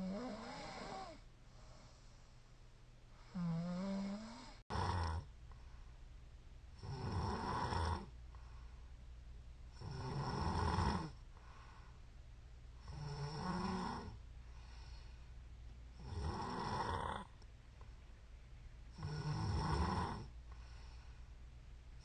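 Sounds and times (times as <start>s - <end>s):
woman snoring: 0.0s - 1.2s, 3.3s - 5.3s, 6.8s - 8.1s, 9.8s - 11.2s, 12.8s - 14.2s, 16.0s - 17.3s, 19.0s - 20.3s.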